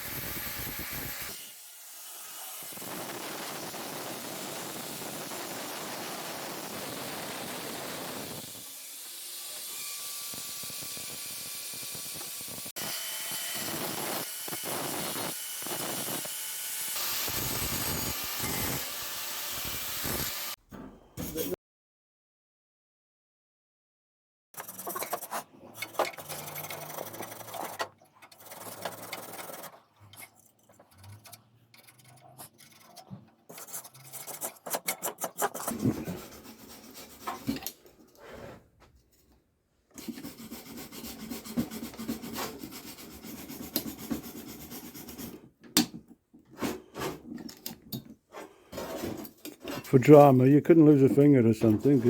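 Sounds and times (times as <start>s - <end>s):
hand tool scraping rusty metal: 24.6s - 38.6s.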